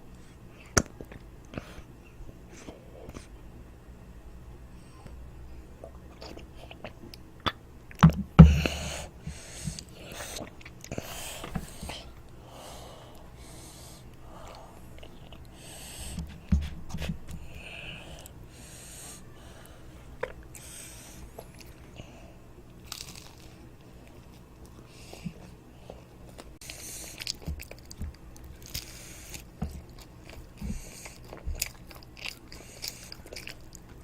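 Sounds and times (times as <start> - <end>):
child chewing toast: 5.8 - 34.0
breaths: 8.4 - 16.3, 17.4 - 22.4, 30.6 - 31.3.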